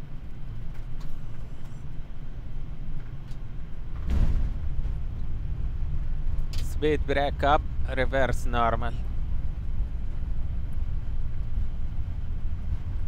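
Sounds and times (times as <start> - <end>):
low rumble of airflow and engines: 0.0 - 13.0
landing gear heavy thump: 3.9 - 5.3.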